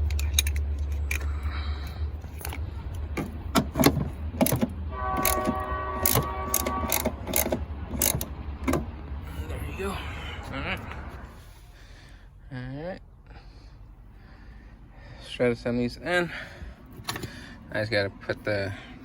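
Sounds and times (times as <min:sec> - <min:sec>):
hand ratchet clicking: 0:02.3 - 0:08.8.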